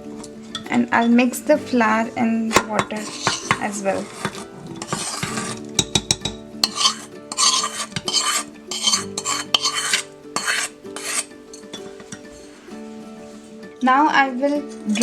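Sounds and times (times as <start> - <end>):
spoon scraping pan: 0.2 - 13.4
spoon clinking on metal pan: 2.5 - 12.2.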